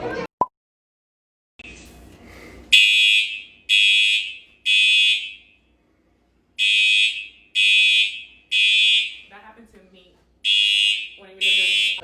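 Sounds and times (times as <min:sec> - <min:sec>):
fire alarm horn blasts: 0:02.7 - 0:05.7, 0:06.6 - 0:09.3, 0:10.4 - 0:12.0.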